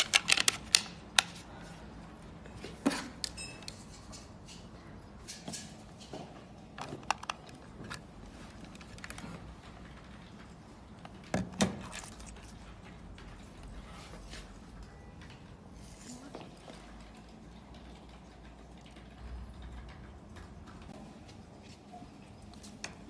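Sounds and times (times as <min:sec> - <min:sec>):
small hard parts clicking: 0:00.0 - 0:01.4.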